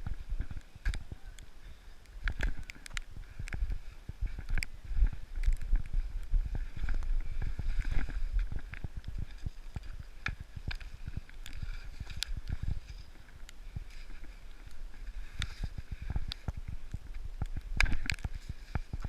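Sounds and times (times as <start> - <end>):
bumps and clicks over snow: 0.0 - 19.0
wind rumble on microphone: 0.0 - 19.0.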